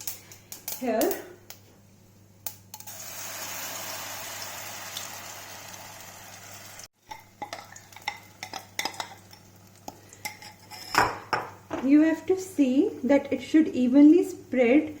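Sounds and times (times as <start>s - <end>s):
batter sizzling in a pan: 2.8s - 6.9s.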